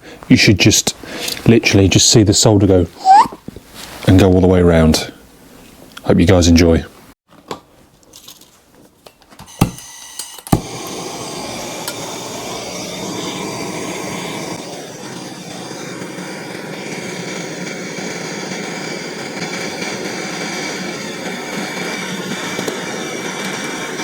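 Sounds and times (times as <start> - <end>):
blowtorch rushing hiss: 10.5 - 24.0.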